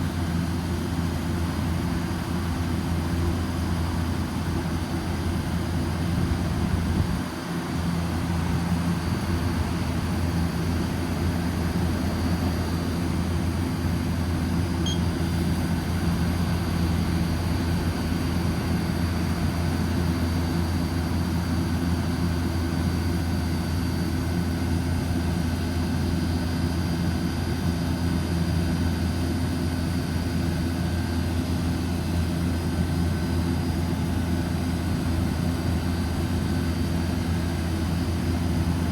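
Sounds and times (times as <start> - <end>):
chiller machine hum: 0.0 - 38.9
faint high whine: 14.6 - 16.0.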